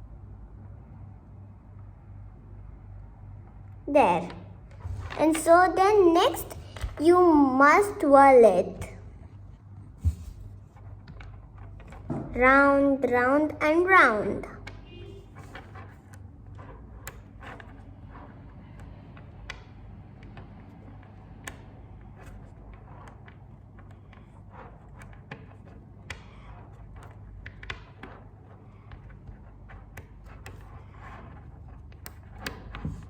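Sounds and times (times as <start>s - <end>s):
magnetic balls clicking: 14.5s - 33.0s.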